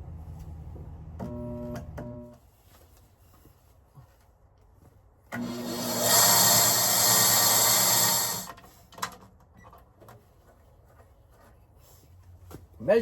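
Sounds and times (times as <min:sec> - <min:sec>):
power tool motor hissing: 0:05.4 - 0:08.5.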